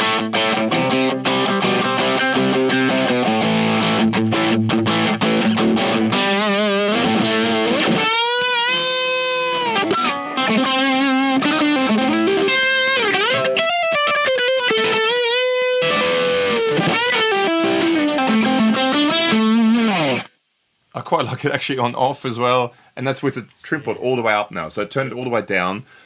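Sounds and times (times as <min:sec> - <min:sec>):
distorted electric guitar lead: 0:00.0 - 0:20.4.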